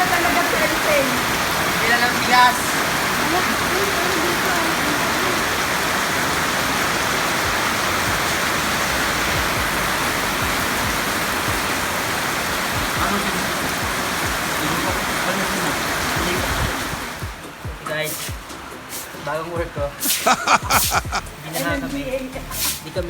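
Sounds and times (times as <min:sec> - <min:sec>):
heavy rain hissing: 0:00.0 - 0:23.0.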